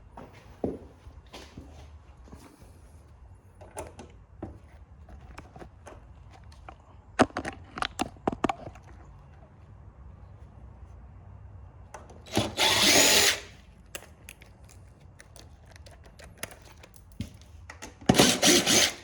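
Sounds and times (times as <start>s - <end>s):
hand tools clicking and knocking: 12.0s - 19.0s.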